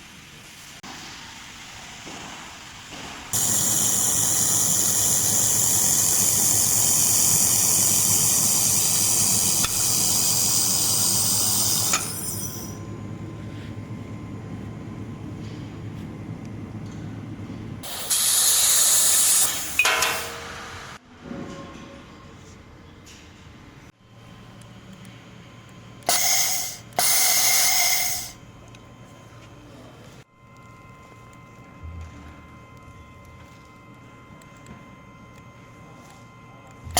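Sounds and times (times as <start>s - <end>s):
laser welder hissing: 3.4s - 12.8s, 17.8s - 21.0s, 26.1s - 28.4s
low steady hum: 7.9s - 17.8s, 27.9s - 36.9s.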